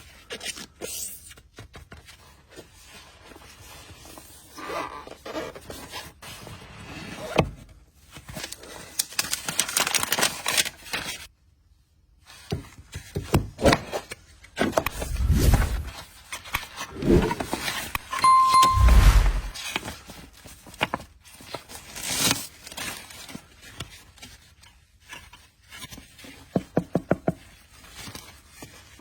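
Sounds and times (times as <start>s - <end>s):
cardboard packaging sliding and scraping: 14.9s - 16.0s
brief high beep: 16.9s - 17.4s, 18.2s - 19.6s.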